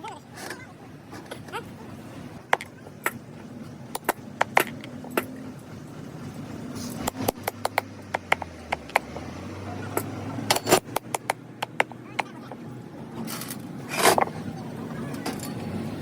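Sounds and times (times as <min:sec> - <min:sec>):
hand tools tapping and clinking: 0:02.4 - 0:05.5, 0:06.9 - 0:14.4.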